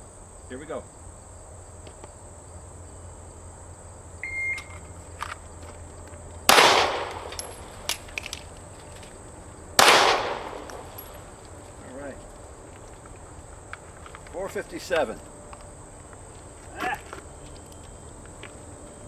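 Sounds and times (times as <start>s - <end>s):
crickets trilling: 0.0s - 19.0s
pistol shot: 6.5s - 8.4s, 9.8s - 11.4s
magazine reload clicks: 6.5s - 9.1s, 9.8s - 11.6s.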